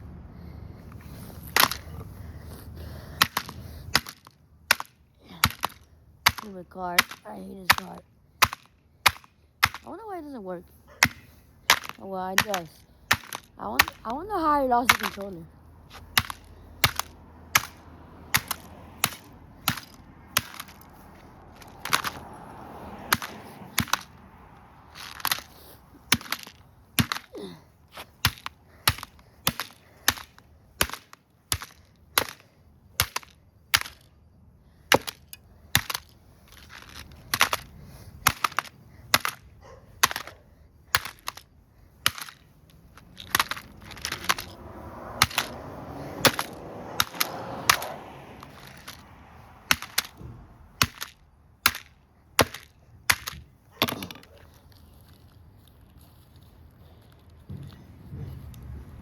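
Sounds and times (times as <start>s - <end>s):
hits smashing toy car: 46.2s - 49.0s, 49.7s - 54.2s.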